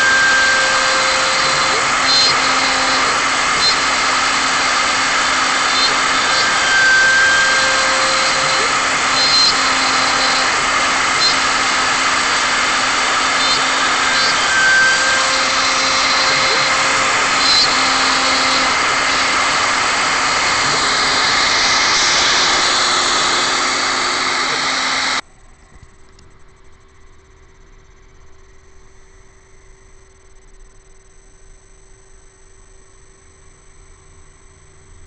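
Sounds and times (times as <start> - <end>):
cnc router cutting wood: 0.0 - 25.2
high squeaks: 0.0 - 25.2
faint hum: 25.2 - 35.0.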